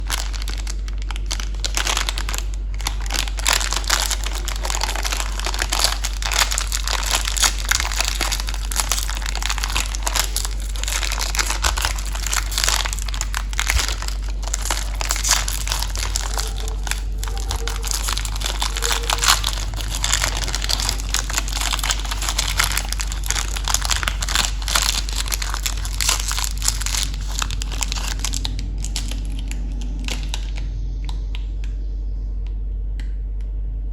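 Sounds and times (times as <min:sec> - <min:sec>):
plastic wrappers crinkling: 0:00.0 - 0:30.7
steady low hum: 0:00.0 - 0:33.9.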